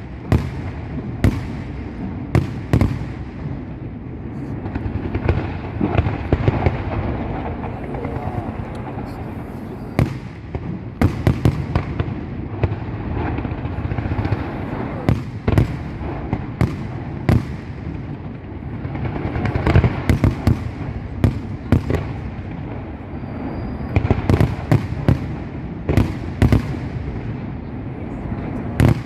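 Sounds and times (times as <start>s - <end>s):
continuous rumble: 0.0s - 29.0s
fireworks bangs: 0.0s - 29.0s.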